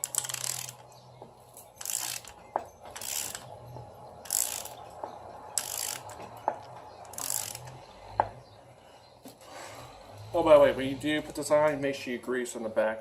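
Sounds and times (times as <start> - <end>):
socket ratchet clicking: 0.0 - 0.9, 1.8 - 3.5, 4.2 - 4.8, 5.6 - 6.3, 7.0 - 7.8.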